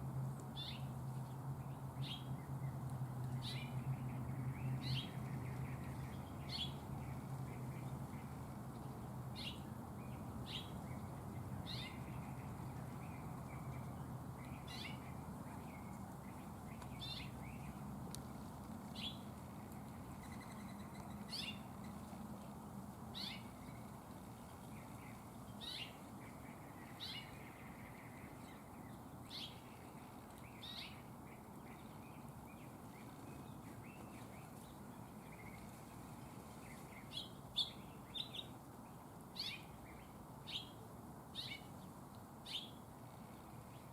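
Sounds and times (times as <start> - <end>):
faint low rumble: 0.0 - 43.9
small birds chip calls: 0.4 - 43.9.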